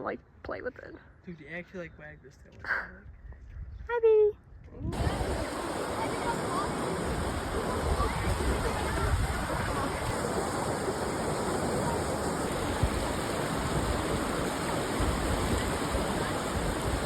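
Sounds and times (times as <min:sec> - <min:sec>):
steady rushing noise: 0:04.9 - 0:17.0.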